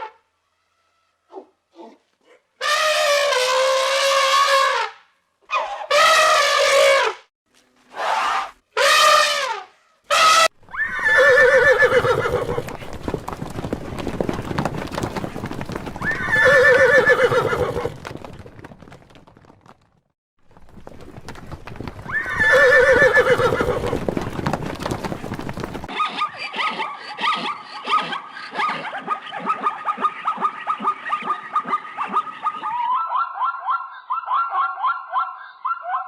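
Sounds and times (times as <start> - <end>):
horse whinnying: 10.1 - 18.1, 22.0 - 29.0
hooves clattering: 10.6 - 26.0.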